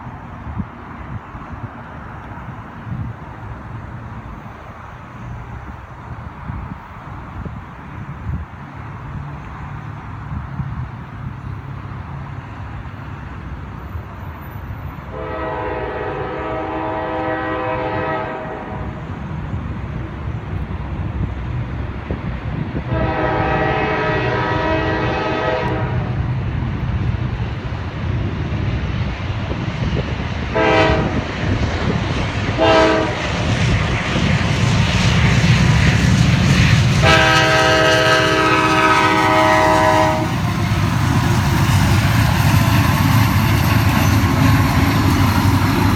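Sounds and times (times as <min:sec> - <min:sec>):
diesel locomotive engine rumble: 0:00.0 - 0:45.9
train air horn blasts: 0:15.1 - 0:19.0, 0:22.9 - 0:26.3, 0:30.5 - 0:31.2, 0:32.6 - 0:33.4, 0:37.0 - 0:41.1.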